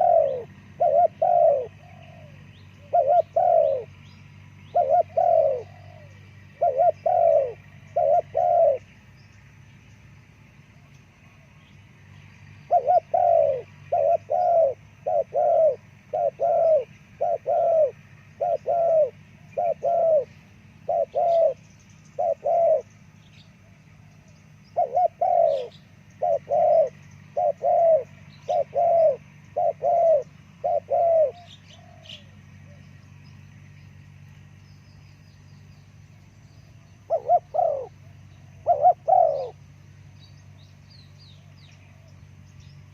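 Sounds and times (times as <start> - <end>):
dove cooing: 0.0 - 9.0, 12.4 - 33.0, 36.9 - 39.8
small birds chirping: 0.0 - 42.9.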